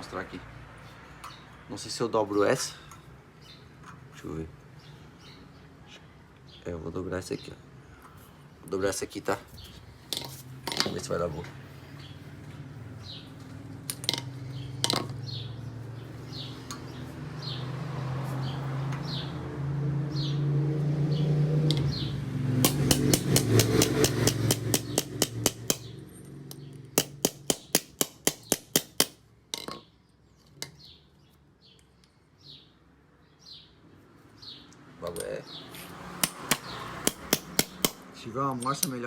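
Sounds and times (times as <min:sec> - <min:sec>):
hammer striking steel tube: 0:22.6 - 0:25.9, 0:27.0 - 0:29.2, 0:36.2 - 0:38.0.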